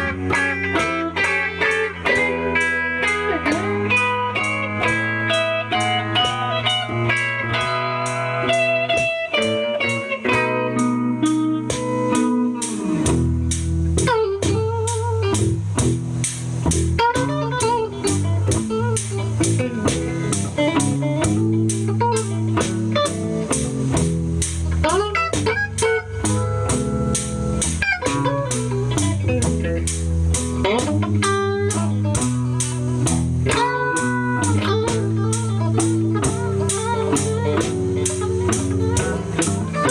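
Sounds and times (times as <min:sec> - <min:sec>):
electric guitar lead lines: 0:00.0 - 0:39.9
steady beat: 0:00.0 - 0:39.9
low bass part: 0:11.7 - 0:39.9.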